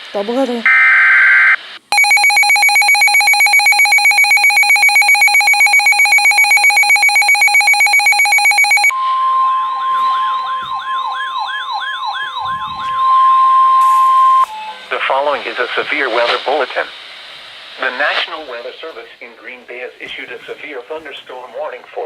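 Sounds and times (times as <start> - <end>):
pulsing electronic alarm tone: 0.7 - 14.9
siren wailing: 0.7 - 14.9
steady alert tone: 1.9 - 14.9.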